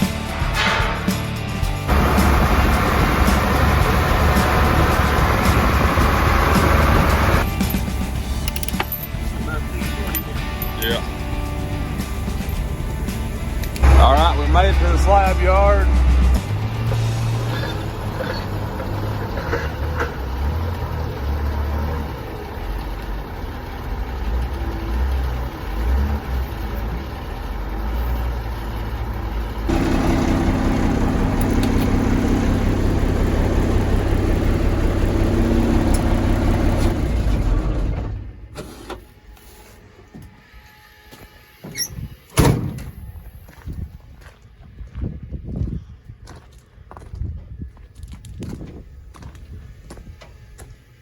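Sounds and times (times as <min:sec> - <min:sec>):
truck engine running: 0:00.0 - 0:38.6.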